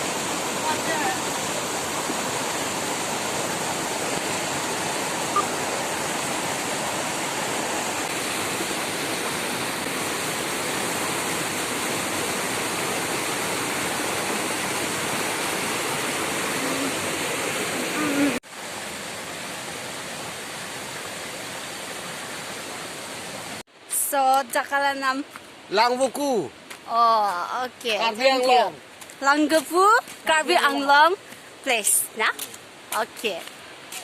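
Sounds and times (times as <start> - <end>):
waterfall pouring: 0.0 - 23.6.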